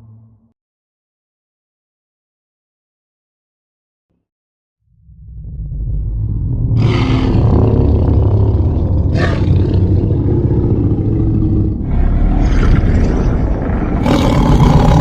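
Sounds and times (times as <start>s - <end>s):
monster roaring: 6.8s - 15.0s.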